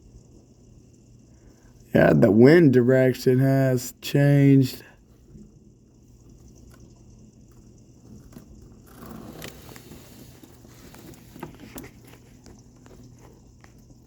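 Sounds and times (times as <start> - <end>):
steady hum: 0.0 - 14.0
drips and ticks: 5.0 - 9.5.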